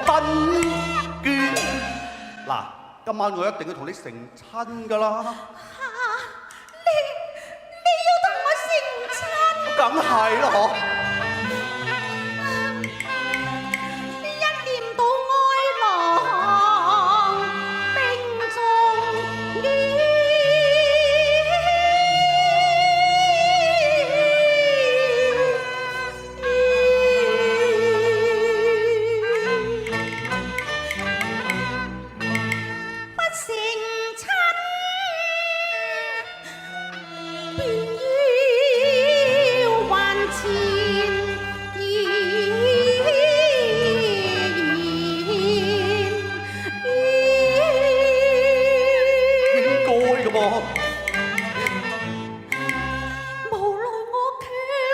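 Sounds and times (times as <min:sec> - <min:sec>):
low instrumental accompaniment: 0:00.0 - 0:03.2, 0:09.6 - 0:33.2, 0:36.9 - 0:53.7
opera singing with vibrato: 0:04.9 - 0:30.7, 0:37.2 - 0:52.0, 0:52.6 - 0:54.9.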